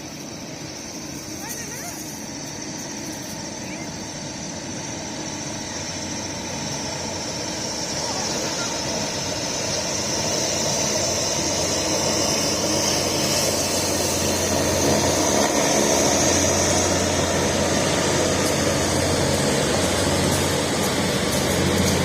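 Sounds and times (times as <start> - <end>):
hovercraft engines and propellers: 0.0 - 22.0.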